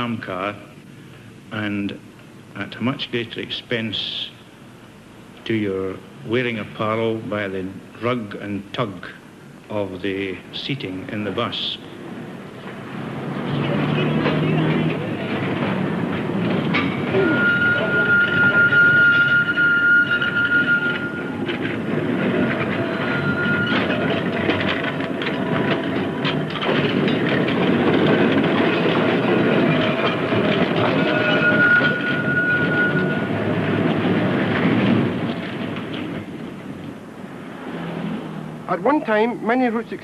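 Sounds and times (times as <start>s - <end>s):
tram wheels rumbling over rail joints: 9.8s - 40.0s
high wheel squeal: 16.8s - 25.0s, 28.8s - 34.8s.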